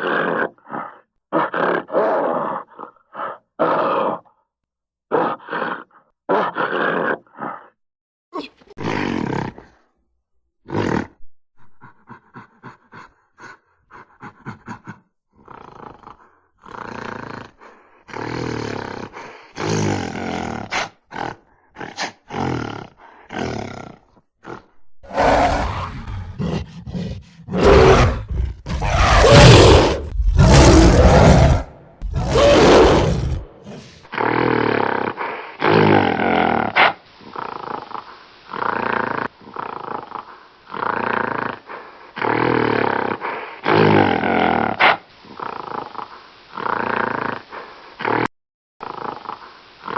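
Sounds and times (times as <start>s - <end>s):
gorilla roaring and grunting: 0.0s - 4.4s, 5.1s - 7.8s, 8.4s - 9.9s, 10.6s - 49.9s.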